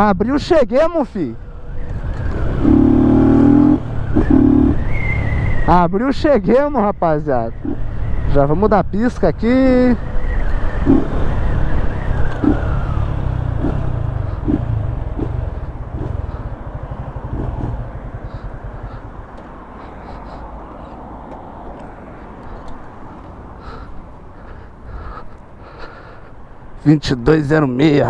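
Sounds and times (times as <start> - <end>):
motorcycle engine slowing to idle: 10.5 - 24.6.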